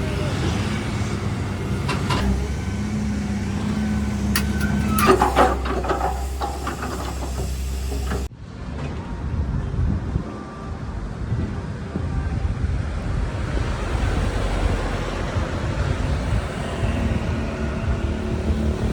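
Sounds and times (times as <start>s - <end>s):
diesel engine running: 0.0s - 8.3s
wind noise: 0.0s - 18.9s.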